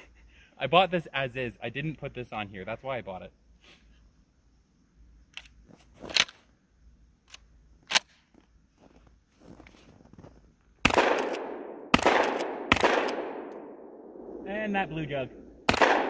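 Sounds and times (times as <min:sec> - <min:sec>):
small sharp clicks: 0:05.3 - 0:06.4, 0:07.2 - 0:08.5
shotgun shots echoing: 0:10.8 - 0:16.0.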